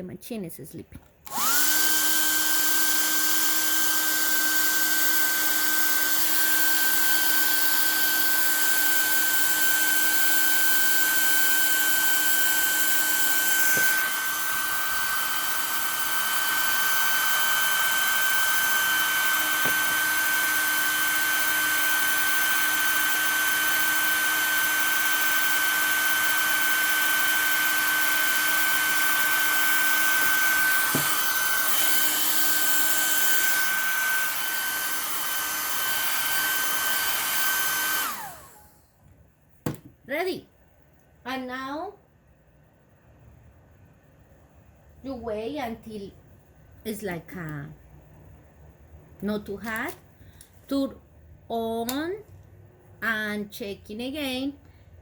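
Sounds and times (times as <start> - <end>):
hair dryer running: 1.2 - 38.8.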